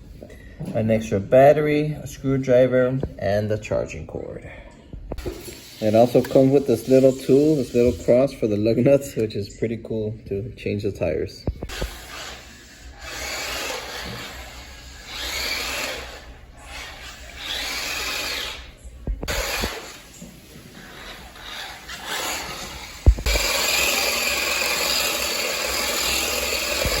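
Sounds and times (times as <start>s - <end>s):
small electric motor whirring: 11.7s - 20.2s, 20.8s - 27.0s.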